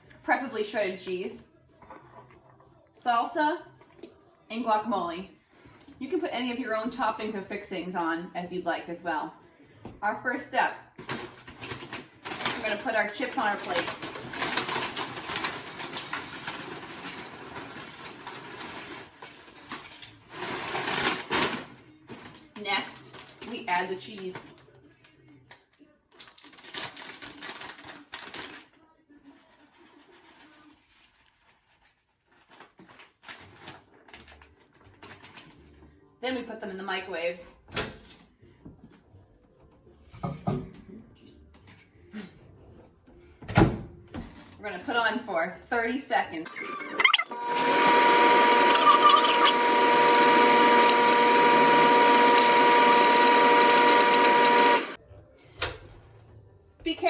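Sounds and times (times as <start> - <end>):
cheese rustling onto chips: 26.2 - 28.8
microwave oven humming: 47.0 - 55.0.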